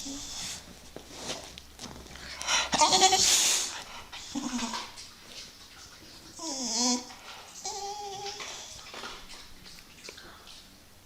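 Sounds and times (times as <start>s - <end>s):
dog whining: 2.7s - 4.9s, 6.3s - 9.0s.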